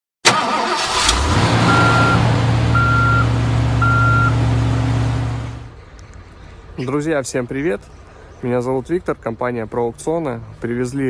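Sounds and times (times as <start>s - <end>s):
diesel truck engine running: 0.3s - 5.8s
reversing alarm beeps: 1.7s - 4.4s.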